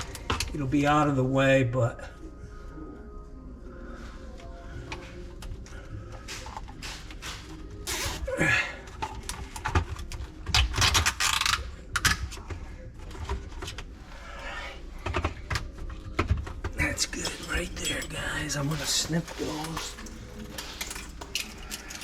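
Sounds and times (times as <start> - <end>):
clicks and handling noises: 15.0 - 22.0.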